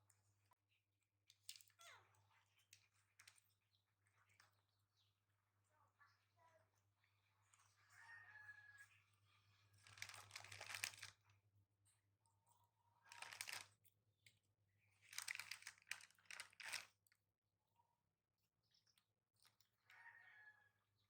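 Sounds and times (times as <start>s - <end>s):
plastic pack crinkling and tearing: 9.8s - 11.2s, 13.1s - 13.7s, 15.1s - 16.9s.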